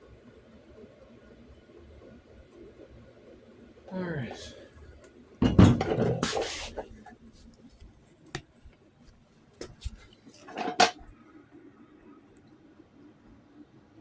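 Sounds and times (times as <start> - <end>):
rustling and clatter: 9.6 - 11.1.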